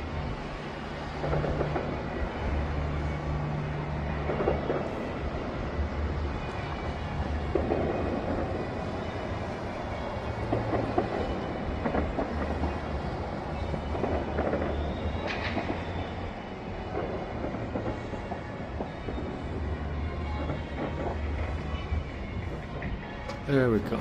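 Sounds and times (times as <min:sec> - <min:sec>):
sharp crack: 0:10.4 - 0:16.1.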